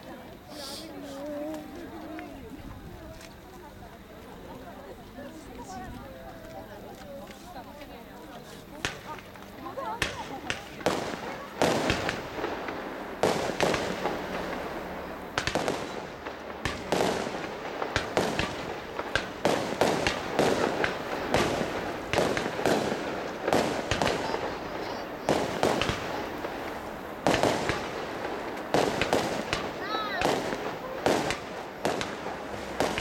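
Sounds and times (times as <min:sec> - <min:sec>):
fireworks shells bursting: 0:08.8 - 0:33.0.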